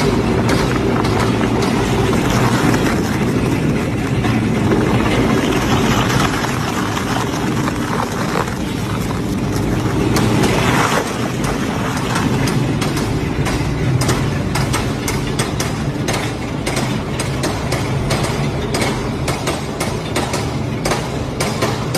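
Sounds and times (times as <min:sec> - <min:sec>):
shredder running: 0:00.0 - 0:15.0
material cracking and snapping: 0:04.6 - 0:13.1.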